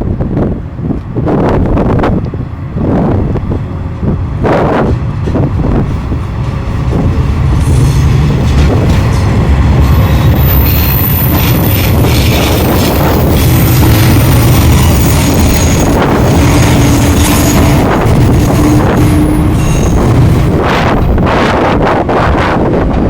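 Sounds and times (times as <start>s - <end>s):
electric train pulling away: 4.8s - 21.8s.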